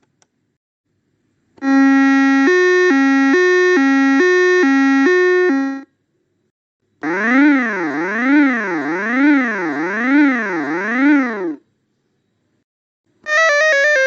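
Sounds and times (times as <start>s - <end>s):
toy keyboard two-tone siren pattern: 1.6s - 5.9s, 7.0s - 11.6s
wailing electronic tone: 1.6s - 5.9s, 7.0s - 11.6s.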